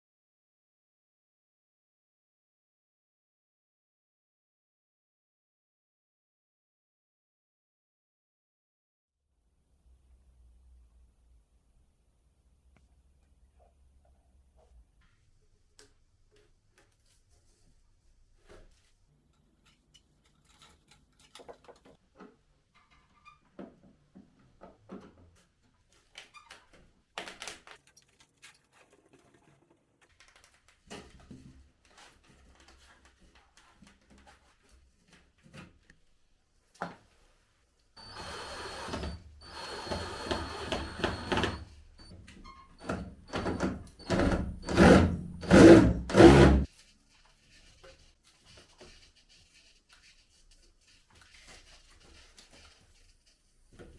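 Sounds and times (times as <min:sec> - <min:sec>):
power drill running: 0:38.0 - 0:42.2, 0:42.8 - 0:46.7.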